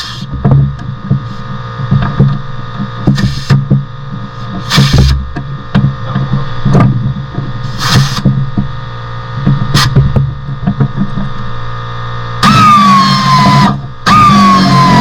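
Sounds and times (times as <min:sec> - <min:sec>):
steady electrical hum: 0:00.0 - 0:15.0
short hissing bursts: 0:03.2 - 0:03.6, 0:04.6 - 0:05.1, 0:07.6 - 0:08.3.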